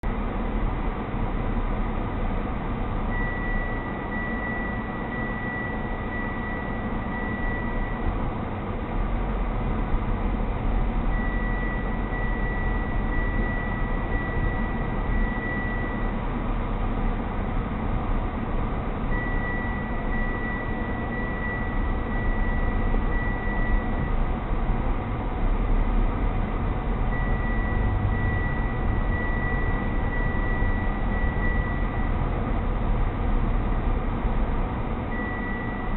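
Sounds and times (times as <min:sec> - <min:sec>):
car engine and road noise: 0:00.0 - 0:35.9
high electronic beep: 0:03.1 - 0:08.1, 0:11.1 - 0:16.1, 0:19.1 - 0:24.2, 0:27.1 - 0:32.2, 0:35.1 - 0:35.9.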